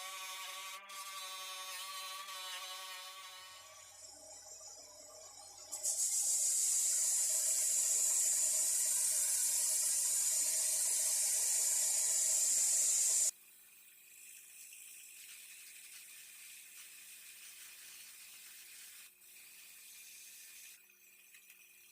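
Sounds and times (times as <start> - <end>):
loud spraying hiss: 5.8 - 13.3.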